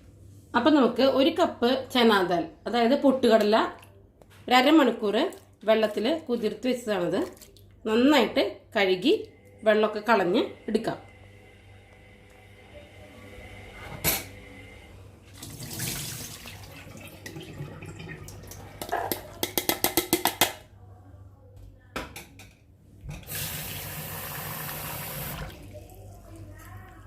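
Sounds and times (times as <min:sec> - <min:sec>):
water running and splashing: 0:15.4 - 0:18.8.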